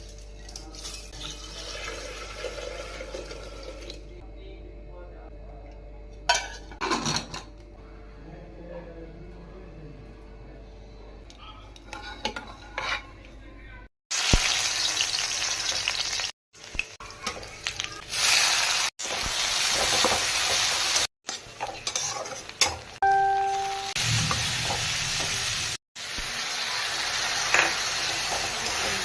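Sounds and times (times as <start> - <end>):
food sizzling in a pan: 14.1 - 29.0
short beeping tone: 23.0 - 24.3.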